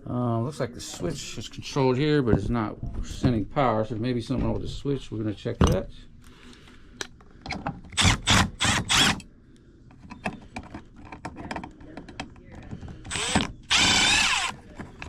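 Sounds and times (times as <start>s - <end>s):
power driver running: 13.1s - 14.6s.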